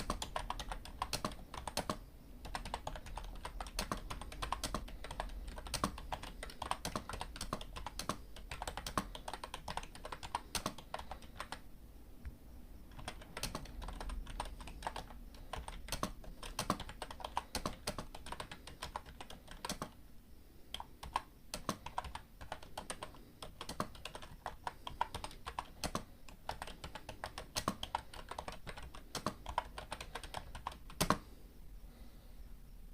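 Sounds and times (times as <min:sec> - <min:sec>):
computer keyboard typing: 0:00.0 - 0:11.7, 0:12.9 - 0:20.0, 0:20.7 - 0:31.3.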